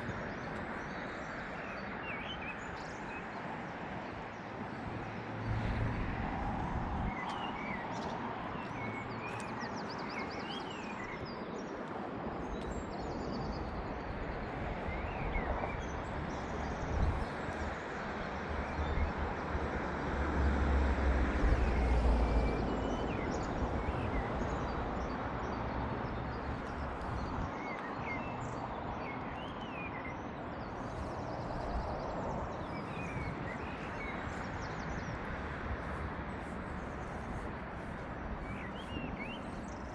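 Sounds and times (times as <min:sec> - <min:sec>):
distant traffic hum: 0:00.0 - 0:39.9
small birds chirping: 0:07.1 - 0:19.2, 0:25.8 - 0:39.9.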